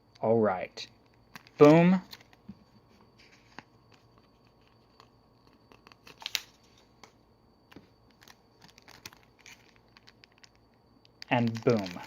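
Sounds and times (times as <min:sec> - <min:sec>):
packaging crinkle: 0:01.0 - 0:02.4, 0:03.2 - 0:06.8, 0:07.7 - 0:12.0.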